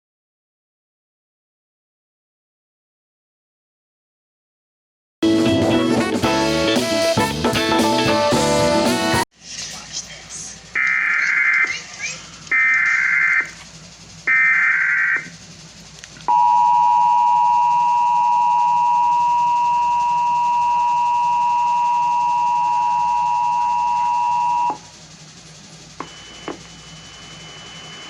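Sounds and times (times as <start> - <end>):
two-tone alarm signal: 14.3 - 15.3, 16.3 - 24.8, 26.0 - 28.0
digital data tones: 26.0 - 28.0.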